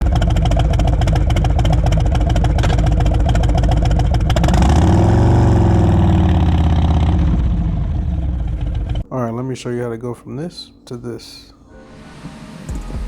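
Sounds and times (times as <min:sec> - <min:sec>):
motorcycle engine idling and revving: 0:00.0 - 0:09.1.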